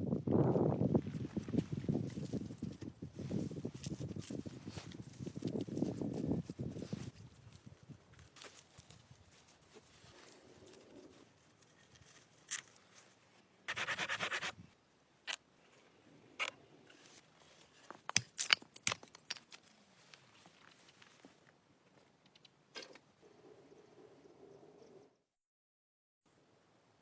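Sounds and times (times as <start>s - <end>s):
sharp clicks and cracks: 18.1s - 19.6s.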